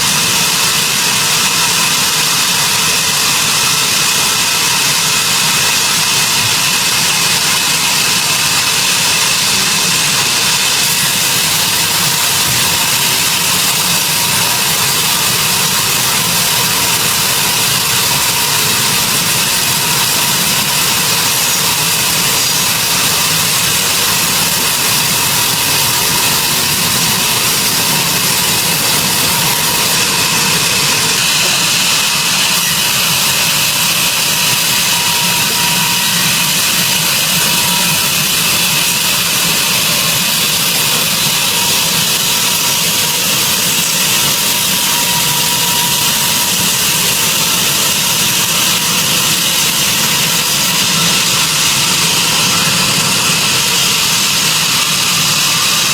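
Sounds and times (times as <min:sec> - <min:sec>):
sawmill machinery running: 0:00.0 - 0:55.9.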